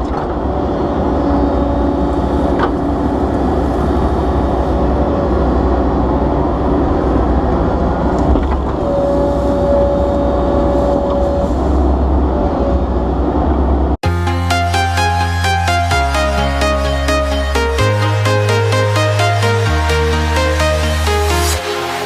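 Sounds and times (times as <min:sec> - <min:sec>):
excavator diesel engine running: 0:00.0 - 0:22.0
high whine: 0:14.0 - 0:22.0.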